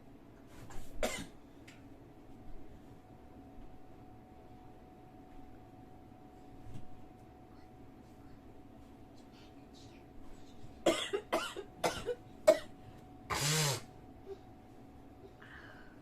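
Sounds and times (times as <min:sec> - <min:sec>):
woman coughing: 0:01.0 - 0:01.3, 0:10.8 - 0:12.7.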